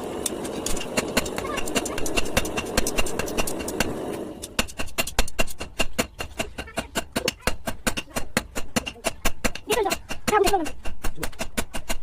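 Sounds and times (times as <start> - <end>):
hammer striking iron on anvil: 0.7 - 12.0.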